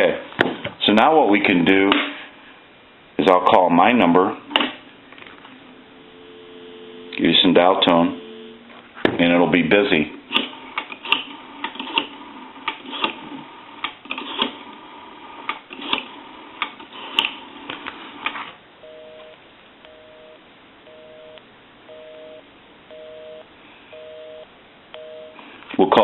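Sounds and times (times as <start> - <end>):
telephone busy signal: 5.8 - 8.7, 18.8 - 25.4.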